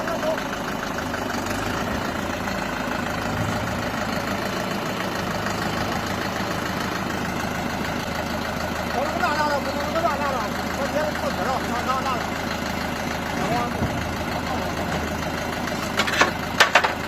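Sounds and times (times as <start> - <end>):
tractor diesel engine running: 0.0 - 17.0.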